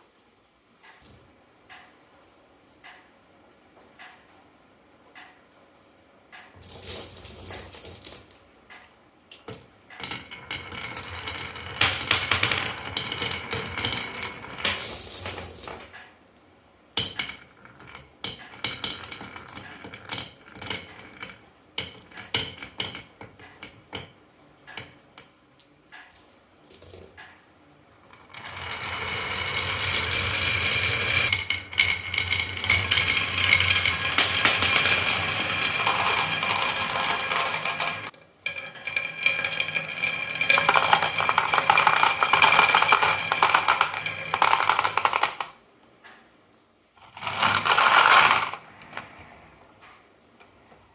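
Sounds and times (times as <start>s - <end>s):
marbles clacking down wooden run: 6.6s - 8.4s, 9.9s - 16.1s, 17.0s - 25.3s, 28.1s - 45.6s, 47.0s - 49.4s.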